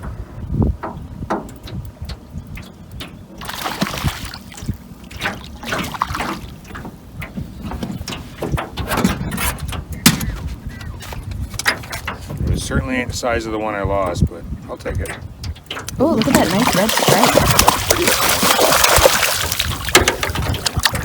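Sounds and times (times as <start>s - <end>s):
water splashing and sloshing: 0.7s - 12.5s, 15.0s - 21.0s
knocks and clicks: 15.0s - 21.0s.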